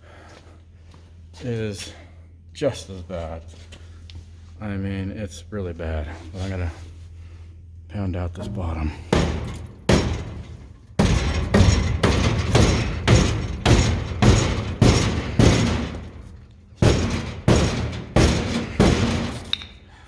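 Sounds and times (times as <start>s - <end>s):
hammer pounding steel: 8.6s - 19.9s.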